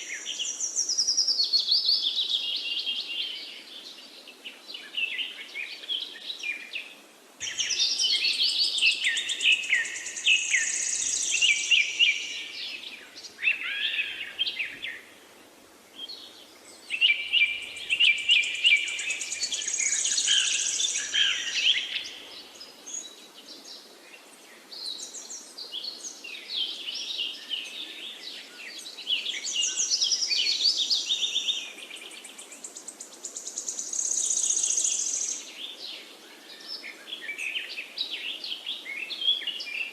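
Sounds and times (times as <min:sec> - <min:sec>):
faint background hiss: 0:00.0 - 0:39.9
songbird singing trills: 0:07.4 - 0:15.1, 0:15.9 - 0:23.6, 0:24.8 - 0:35.8.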